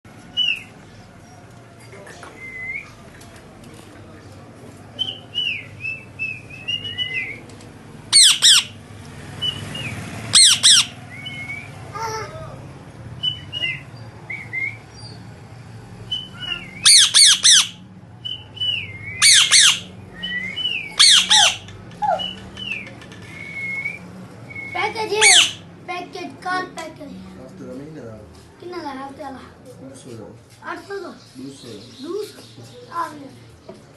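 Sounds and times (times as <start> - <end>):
parrot squawking: 8.1 - 8.8, 9.5 - 11.4, 16.2 - 17.8, 18.6 - 22.8, 24.8 - 25.7
parrot whistling: 8.1 - 8.8, 9.4 - 11.8, 13.2 - 15.1, 16.1 - 25.6.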